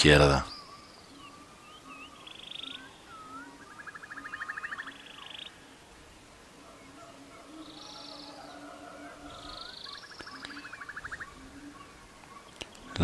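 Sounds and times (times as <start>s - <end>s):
animal swooping chirps: 1.7s - 5.5s, 7.5s - 12.0s.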